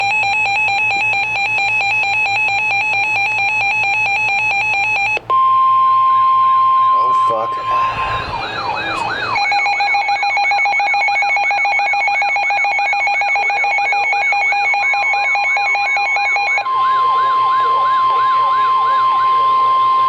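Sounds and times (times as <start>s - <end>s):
buzzing alarm tone: 0.0s - 20.0s
sweeping siren yelp: 0.0s - 20.0s
steady high alert tone: 6.2s - 20.0s.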